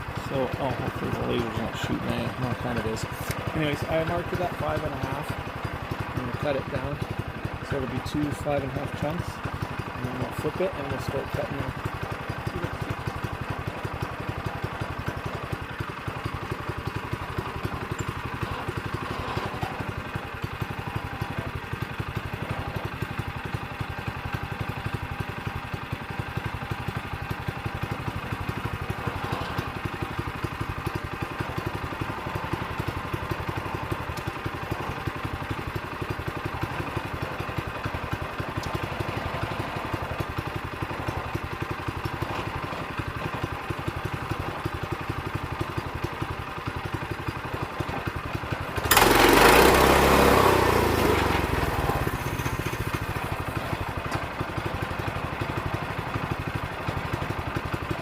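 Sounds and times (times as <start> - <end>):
sawmill engine running: 0.0 - 58.0
saw cutting through log: 48.9 - 53.2.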